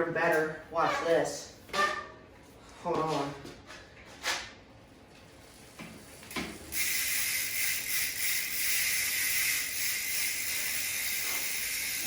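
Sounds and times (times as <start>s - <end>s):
bicycle freehub ratcheting buzz: 6.0s - 12.0s.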